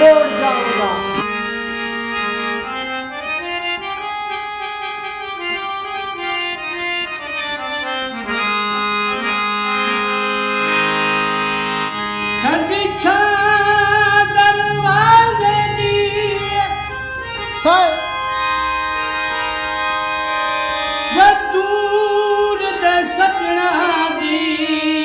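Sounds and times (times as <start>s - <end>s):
reedy accordion-like melody: 0.0s - 25.0s
person singing: 12.4s - 16.9s, 17.6s - 18.2s, 21.1s - 25.0s.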